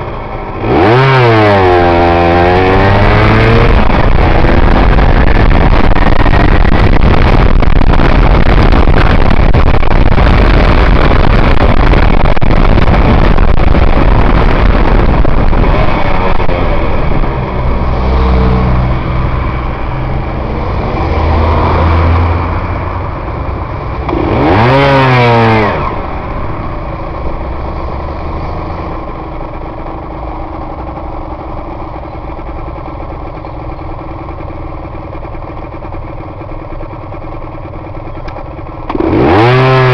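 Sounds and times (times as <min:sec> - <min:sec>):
wind noise: 0:00.0 - 0:31.6
motorcycle engine: 0:00.0 - 0:39.9.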